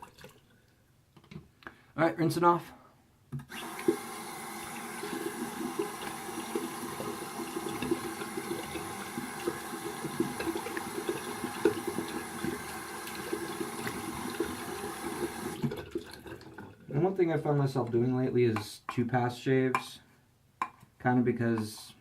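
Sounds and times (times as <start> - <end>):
tap water running into sink: 3.4 - 16.8.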